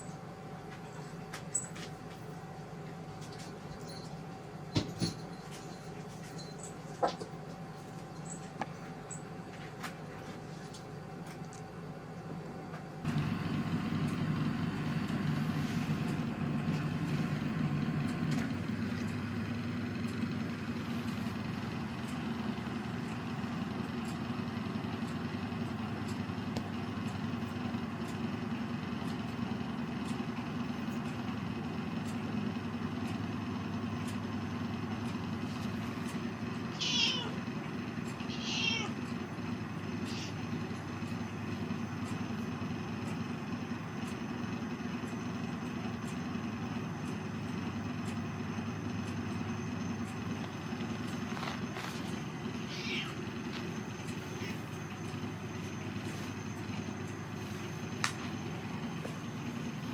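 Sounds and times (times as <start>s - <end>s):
low mechanical hum: 0.0s - 59.9s
cat meowing: 36.7s - 37.4s, 38.3s - 39.0s, 40.0s - 40.4s, 52.6s - 53.2s.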